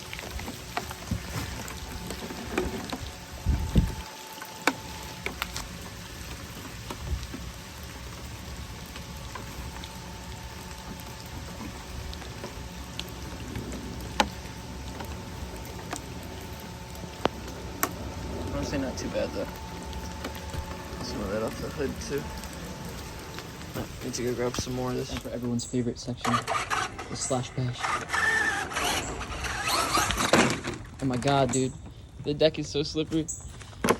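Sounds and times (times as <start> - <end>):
sharp drips and taps: 0.0 - 25.6
steady rain pattering: 0.0 - 33.9.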